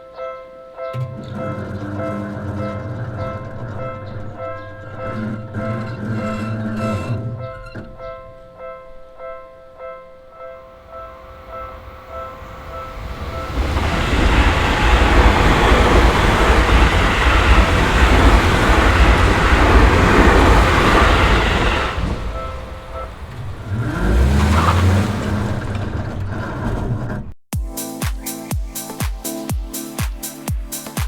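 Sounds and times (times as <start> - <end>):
train passing close by: 10.3 - 26.3.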